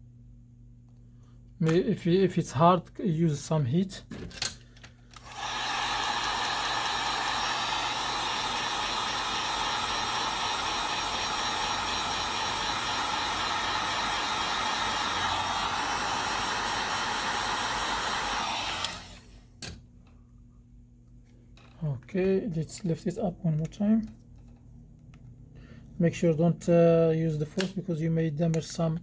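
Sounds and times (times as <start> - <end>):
hot-air blower blowing: 5.2 - 19.6.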